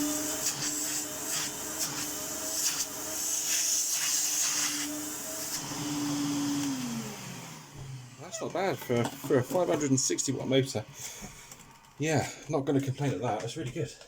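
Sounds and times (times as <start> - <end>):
vacuum cleaner motor running: 0.0 - 12.2.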